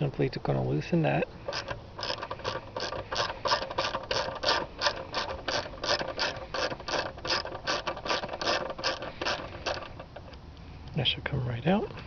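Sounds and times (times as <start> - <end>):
ratchet clicking: 1.4 - 10.4.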